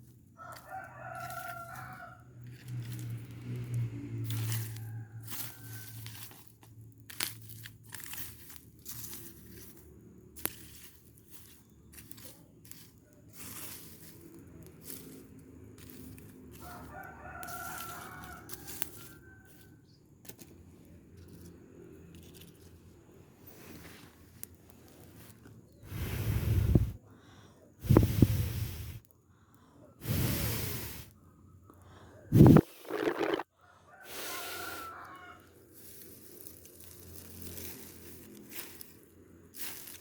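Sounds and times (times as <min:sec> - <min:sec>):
fire crackling and rustling: 0:00.0 - 0:21.5, 0:22.1 - 0:27.0, 0:27.8 - 0:29.1, 0:32.3 - 0:33.5, 0:34.1 - 0:40.0
rooster crowing: 0:00.4 - 0:03.1, 0:04.2 - 0:06.3, 0:15.8 - 0:19.8, 0:32.4 - 0:35.5.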